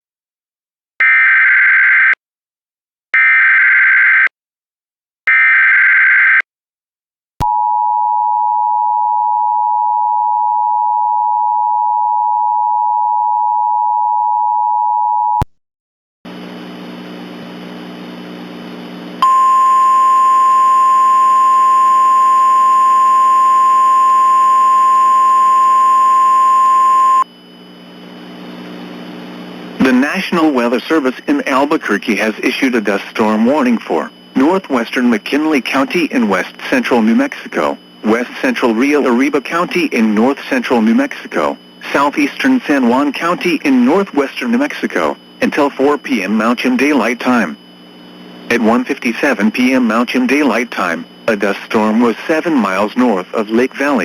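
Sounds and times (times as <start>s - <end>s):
buzzy hum: 16.3s - 30.6s
two-tone attention signal: 19.2s - 27.3s
steady single tone: 19.2s - 27.6s.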